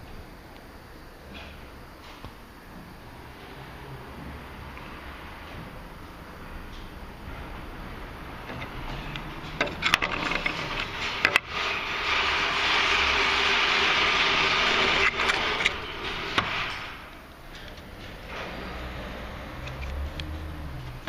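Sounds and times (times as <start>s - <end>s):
steady rushing hiss: 0.0s - 21.0s
handling clicks and knocks: 8.4s - 11.5s.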